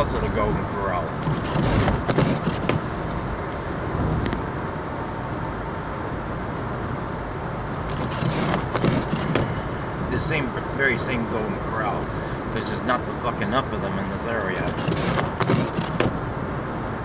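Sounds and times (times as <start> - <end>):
car road and engine noise: 0.0 - 17.0.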